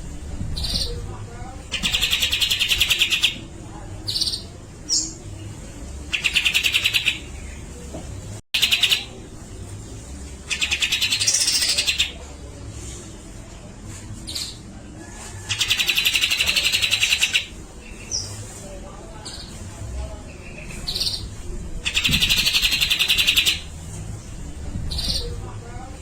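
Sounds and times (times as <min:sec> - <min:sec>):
bird singing rattling phrases: 0:00.5 - 0:07.8, 0:08.6 - 0:09.2, 0:10.4 - 0:12.2, 0:15.5 - 0:18.4, 0:20.3 - 0:23.7, 0:24.9 - 0:25.6.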